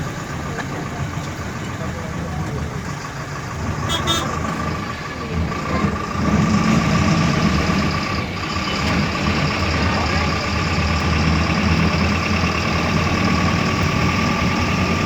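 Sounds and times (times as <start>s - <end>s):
engine running with whine: 0.0s - 15.0s.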